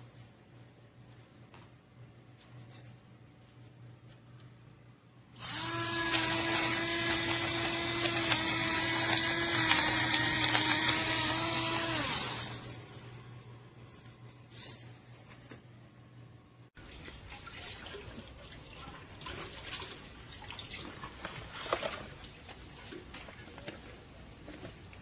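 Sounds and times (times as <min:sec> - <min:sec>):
grinder motor whirring: 0:05.4 - 0:13.1.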